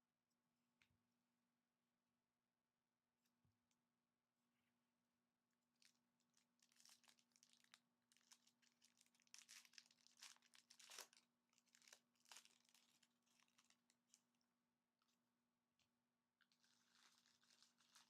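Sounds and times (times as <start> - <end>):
card pack wrapper tearing: 6.6 - 13.8.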